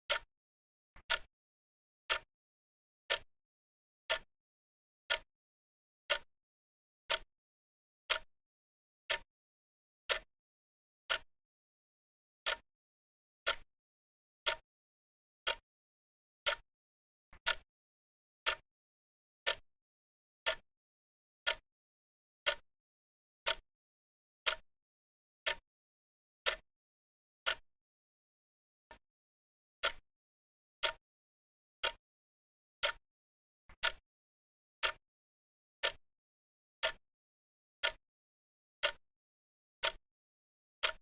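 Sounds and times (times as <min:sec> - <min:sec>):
clock ticking: 0:01.0 - 0:01.3, 0:02.1 - 0:02.3, 0:07.1 - 0:07.3, 0:08.1 - 0:08.3, 0:09.1 - 0:09.3, 0:14.4 - 0:14.6, 0:17.4 - 0:17.6, 0:18.4 - 0:18.6, 0:20.4 - 0:20.6, 0:33.7 - 0:34.0.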